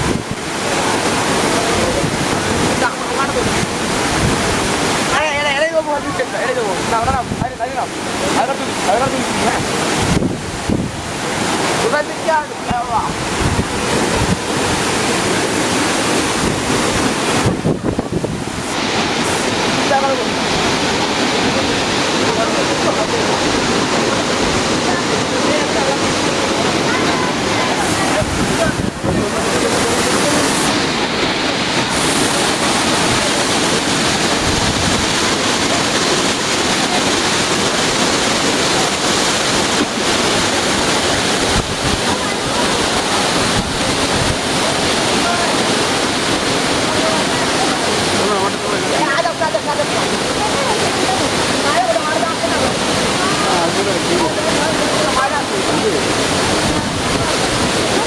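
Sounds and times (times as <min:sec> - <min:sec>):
wind buffeting microphone: 0:00.0 - 0:05.1, 0:09.1 - 0:11.9, 0:12.7 - 0:19.8, 0:23.4 - 0:48.1, 0:56.0 - 0:58.0
waterfall roaring: 0:00.0 - 0:58.0.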